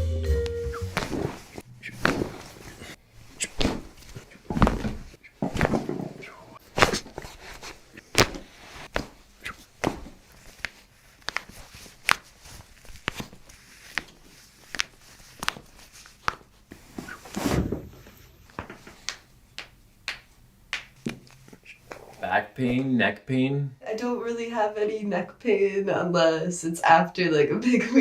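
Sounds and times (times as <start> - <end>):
footsteps on hard floor: 0.9 - 3.0, 3.6 - 6.1.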